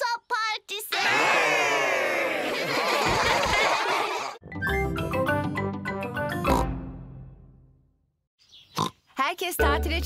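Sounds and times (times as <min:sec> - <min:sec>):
cartoon characters laughing together: 0:01.0 - 0:04.4.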